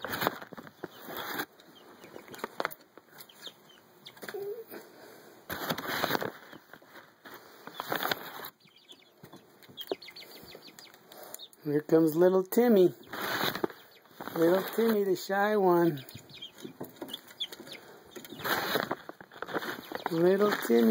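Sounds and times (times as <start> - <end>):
chicken clucking: 0.2 - 5.0, 5.6 - 11.6, 12.7 - 20.9
chickens flapping wings: 5.5 - 7.1, 13.1 - 16.0, 16.9 - 20.9.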